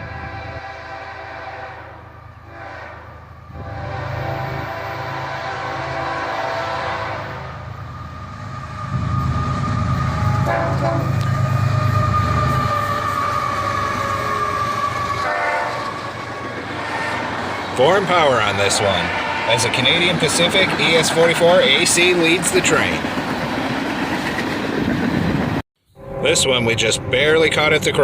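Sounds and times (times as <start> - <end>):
train air horn: 0.0 - 16.0, 16.7 - 17.5, 18.2 - 20.2
locomotive engines rumbling past: 0.0 - 28.0.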